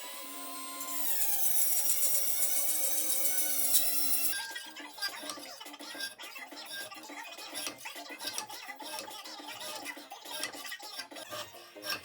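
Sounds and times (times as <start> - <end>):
power tool whining on metal: 0.0 - 4.4.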